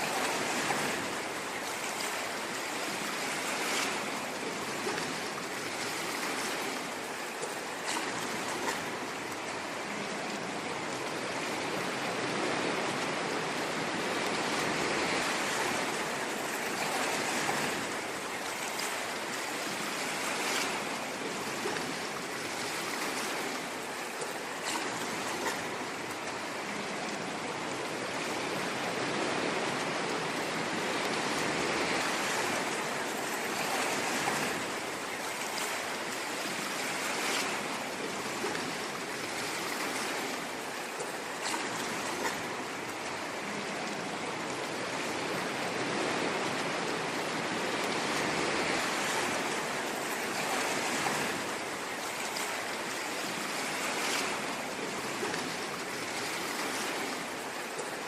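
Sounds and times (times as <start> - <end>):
ocean waves washing on shore: 0.0 - 58.0
small water splashes: 0.0 - 58.0.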